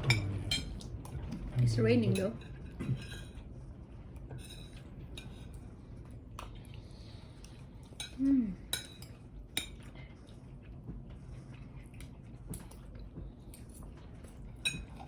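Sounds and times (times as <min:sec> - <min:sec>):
cutlery clinking on plates: 0:00.0 - 0:00.8, 0:02.1 - 0:03.4, 0:14.6 - 0:15.0.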